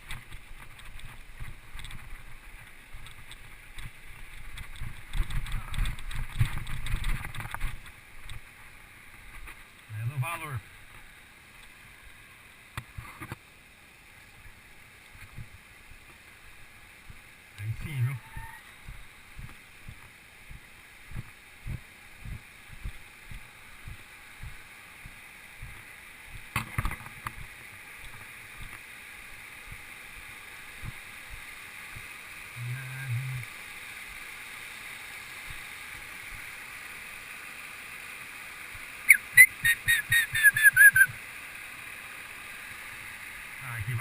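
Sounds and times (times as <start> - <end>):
steady high hiss: 0.0 - 44.0
bird whistling call: 18.2 - 18.8, 39.1 - 41.1
footsteps on a trail: 18.4 - 26.5.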